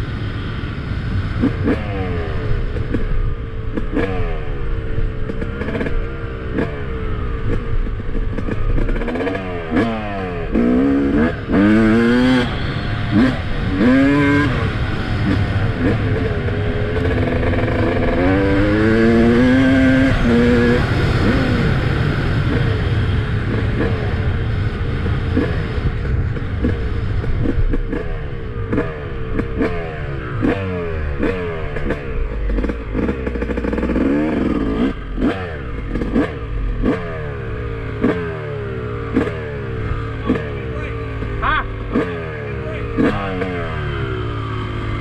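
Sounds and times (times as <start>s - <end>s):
two-stroke engine revving: 1.4s - 45.0s.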